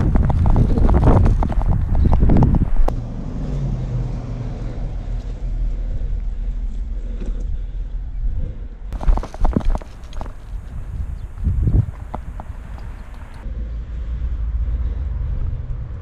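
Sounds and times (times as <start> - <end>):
running footsteps: 0.0 - 2.9, 9.0 - 13.4
wind rumble on microphone: 0.0 - 16.0.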